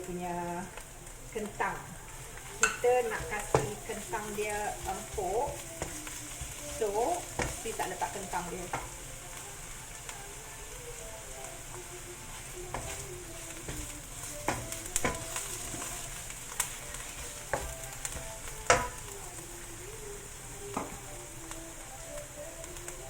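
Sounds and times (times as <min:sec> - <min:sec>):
meat sizzling in hot oil: 0:00.0 - 0:23.0
spatula knocking against pan: 0:02.6 - 0:03.8, 0:07.3 - 0:08.0, 0:08.7 - 0:09.0, 0:17.5 - 0:19.0.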